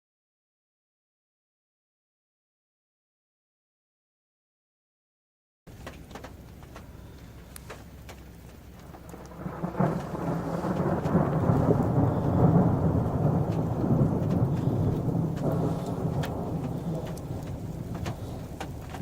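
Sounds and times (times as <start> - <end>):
deep rolling thunder rumble: 5.7 - 19.0
thunder crack: 5.8 - 19.0.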